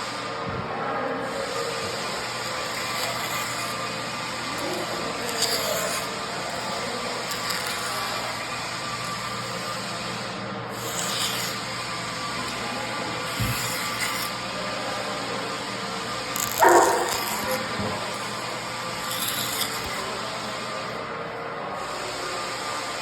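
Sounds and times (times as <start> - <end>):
sanding tool rasping on wood: 1.2 - 14.5, 16.2 - 20.9.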